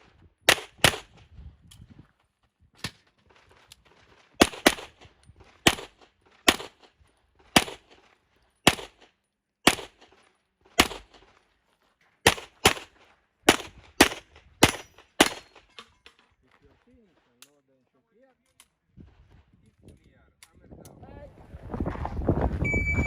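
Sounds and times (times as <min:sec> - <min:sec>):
handgun shots with echo: 0:04.4 - 0:05.0, 0:05.6 - 0:06.9, 0:07.5 - 0:08.0, 0:08.6 - 0:10.2, 0:10.8 - 0:11.3, 0:12.2 - 0:15.8.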